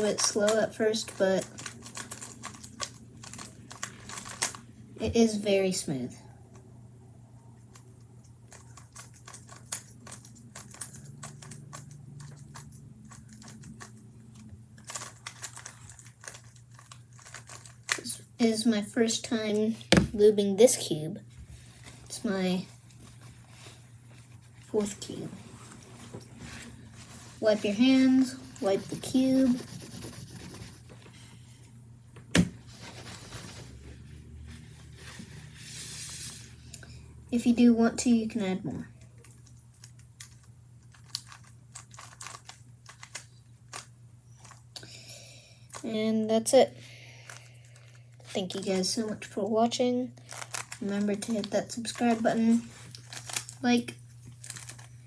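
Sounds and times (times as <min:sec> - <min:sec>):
sharp knock: 0:19.8 - 0:20.2
tissue paper rubbing: 0:25.4 - 0:30.9.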